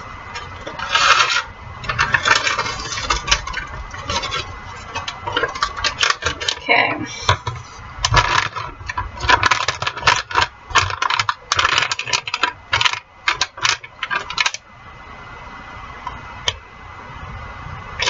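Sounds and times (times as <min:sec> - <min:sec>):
steady low hiss: 0:00.0 - 0:18.0.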